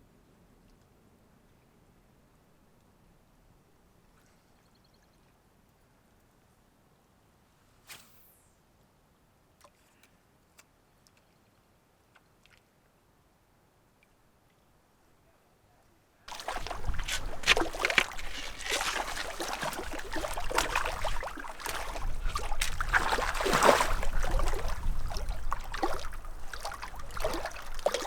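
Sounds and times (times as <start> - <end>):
water splashing and sloshing: 16.3 - 28.0.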